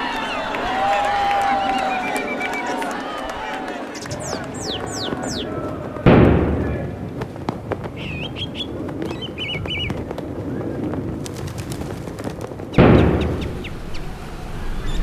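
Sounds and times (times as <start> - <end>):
outdoor background noise: 0.0 - 15.0
small birds chirping: 3.8 - 5.6, 7.9 - 10.9, 12.7 - 15.0
cannon shot booming: 6.0 - 7.6, 12.8 - 15.0.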